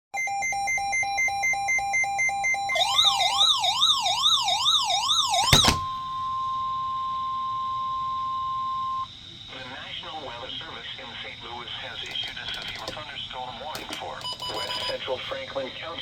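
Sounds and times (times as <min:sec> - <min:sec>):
steady alarm tone: 0:00.1 - 0:09.2, 0:13.7 - 0:15.3
warbling siren tone: 0:00.2 - 0:06.7.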